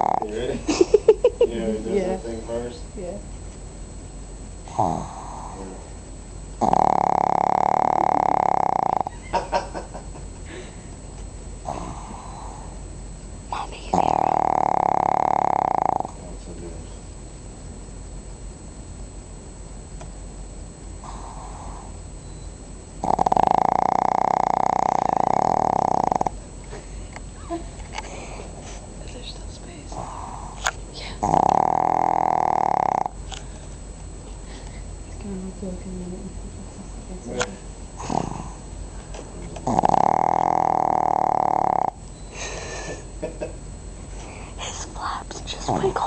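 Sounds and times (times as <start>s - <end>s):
dog snoring: 0.0s - 0.5s, 4.6s - 5.9s, 6.6s - 9.1s, 11.6s - 12.8s, 13.5s - 16.2s, 21.0s - 22.0s, 23.0s - 26.4s, 29.9s - 33.2s, 38.0s - 38.7s, 39.6s - 42.0s.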